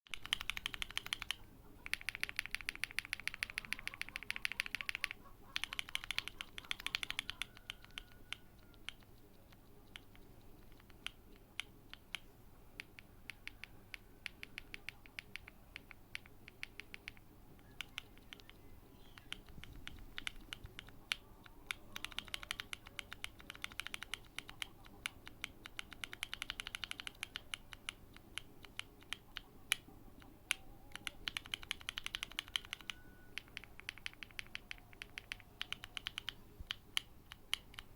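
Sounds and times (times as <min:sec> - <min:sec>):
mechanical keyboard typing: 0:00.1 - 0:37.9.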